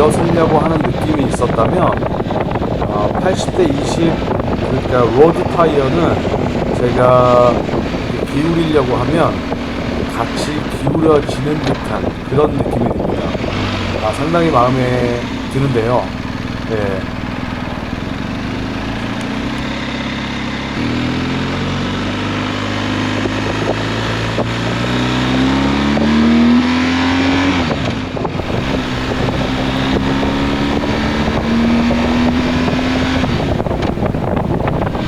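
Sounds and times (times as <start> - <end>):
wind rushing over microphone: 0.0 - 19.8, 27.6 - 35.0
motorcycle engine accelerating: 0.0 - 35.0.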